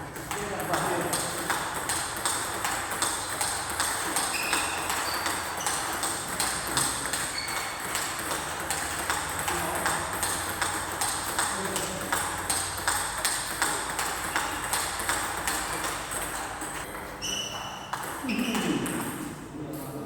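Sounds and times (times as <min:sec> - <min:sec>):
ball hitting racket clicks: 0:00.2 - 0:16.9
shoe squeaks on court floor: 0:04.3 - 0:08.0, 0:16.8 - 0:18.8.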